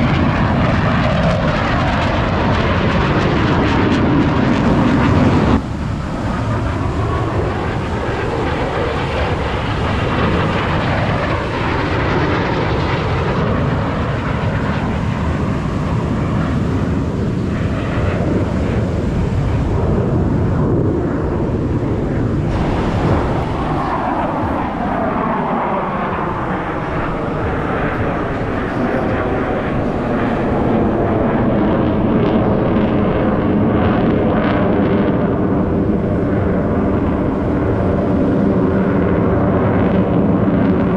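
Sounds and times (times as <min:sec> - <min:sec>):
jet engines roaring: 0:00.0 - 0:40.9.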